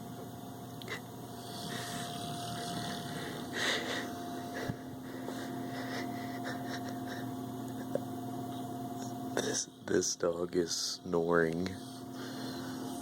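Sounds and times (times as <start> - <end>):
dog snoring: 1.4 - 4.7.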